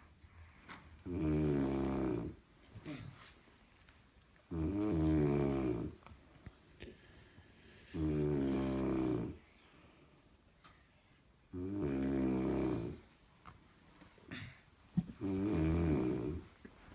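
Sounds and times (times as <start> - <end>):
woman snoring loudly: 1.0 - 2.4, 4.5 - 6.0, 8.0 - 9.4, 11.5 - 13.0, 15.1 - 16.5.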